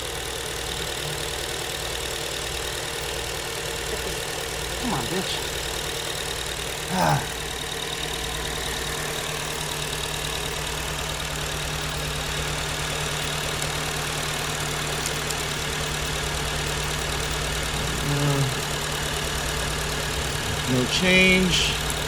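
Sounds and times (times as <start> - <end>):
car engine idling with misfire: 0.0 - 22.0.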